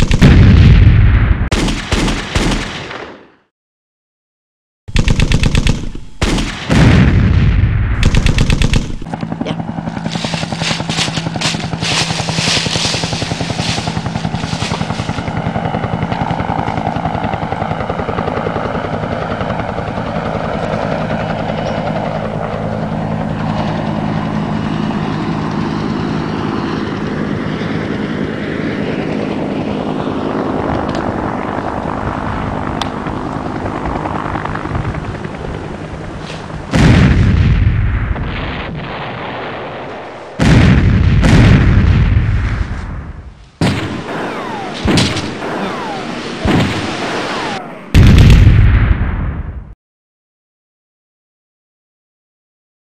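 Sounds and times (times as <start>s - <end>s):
gunfire bursts: 0.0s - 0.7s, 1.5s - 3.2s, 4.9s - 7.2s, 8.0s - 9.1s, 10.0s - 15.4s, 43.6s - 48.7s
helicopter rotor chopping: 4.9s - 6.6s, 8.0s - 36.8s, 43.6s - 48.4s.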